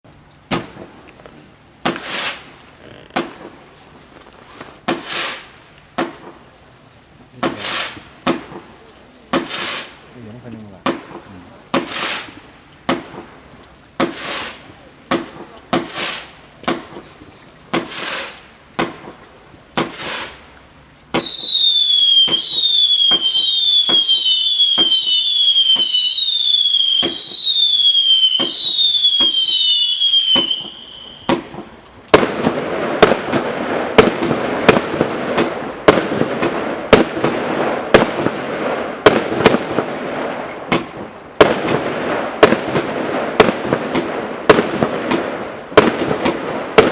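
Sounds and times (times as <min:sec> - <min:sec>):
firework bangs with crackle: 0:00.5 - 0:06.6, 0:07.3 - 0:20.5, 0:21.1 - 0:46.9
firework single shots: 0:01.8 - 0:02.5, 0:04.8 - 0:06.4, 0:07.4 - 0:08.7, 0:09.3 - 0:10.0, 0:10.8 - 0:13.3, 0:14.0 - 0:17.1, 0:17.7 - 0:19.2, 0:19.8 - 0:20.4, 0:21.2 - 0:46.9
falling firework whistles: 0:01.9 - 0:03.5, 0:04.4 - 0:05.5, 0:14.0 - 0:14.6, 0:17.8 - 0:18.4, 0:19.8 - 0:20.4, 0:21.2 - 0:32.2.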